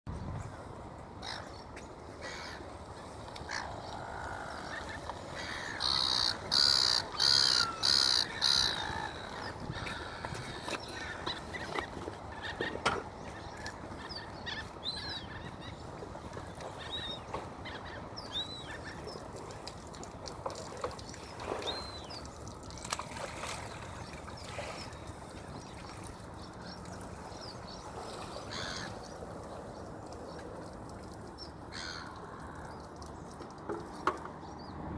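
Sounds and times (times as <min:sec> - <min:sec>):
wind noise: 0:00.1 - 0:00.9, 0:08.8 - 0:11.0.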